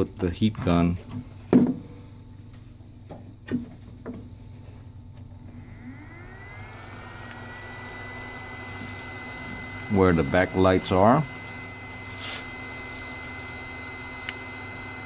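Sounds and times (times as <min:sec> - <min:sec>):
heat gun fan whine: 0:00.0 - 0:15.0.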